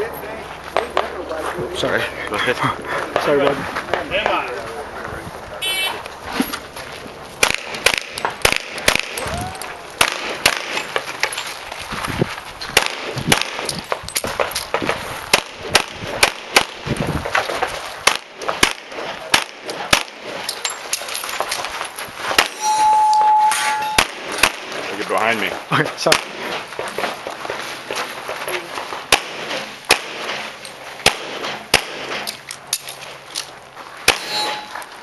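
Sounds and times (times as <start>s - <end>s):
handgun shots: 7.4s - 9.2s, 10.0s - 10.8s, 12.8s - 13.7s, 18.0s - 20.4s, 24.0s - 24.9s, 29.1s - 32.4s, 34.1s - 34.7s
bullets clanging on steel targets: 7.4s - 11.6s, 12.8s - 14.8s, 18.1s - 21.8s, 22.4s - 25.0s, 28.5s - 33.5s, 34.1s - 35.0s
steady electronic beep: 22.5s - 24.1s, 34.2s - 34.8s.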